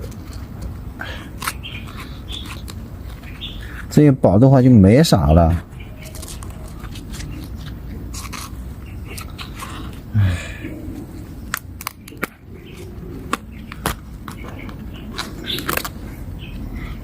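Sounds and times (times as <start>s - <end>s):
leaves snapping off by hand: 11.5s - 16.0s.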